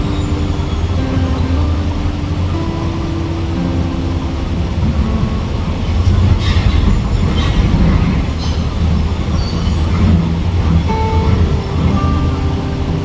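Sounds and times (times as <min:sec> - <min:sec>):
heavy machinery rumble: 0:00.0 - 0:13.0
metallic scraping squeals: 0:05.8 - 0:12.3.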